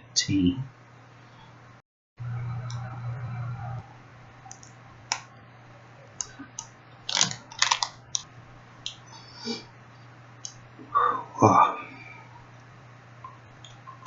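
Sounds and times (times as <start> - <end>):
low steady hum: 0.0 - 14.0
wrapper crinkling: 7.0 - 8.3.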